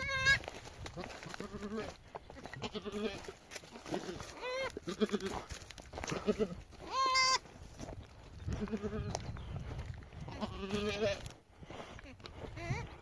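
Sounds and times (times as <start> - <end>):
sheep bleating: 0.0 - 5.4, 6.0 - 7.4, 10.3 - 11.3.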